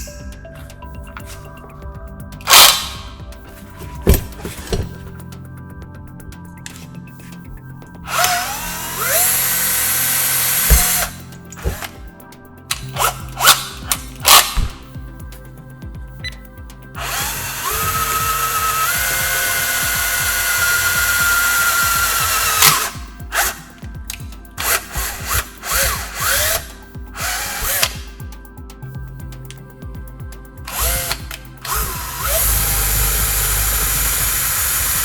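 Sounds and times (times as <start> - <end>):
small electric motor whining: 8.1 - 12.0, 17.0 - 23.7, 24.6 - 28.1, 30.7 - 35.0.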